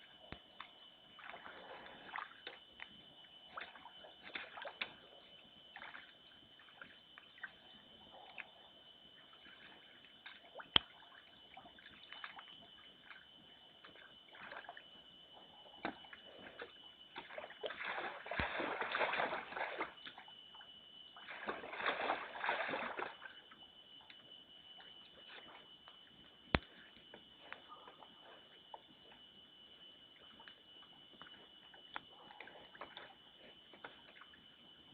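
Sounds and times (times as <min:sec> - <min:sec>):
bear splashing in water: 0:17.2 - 0:19.9, 0:21.3 - 0:23.2.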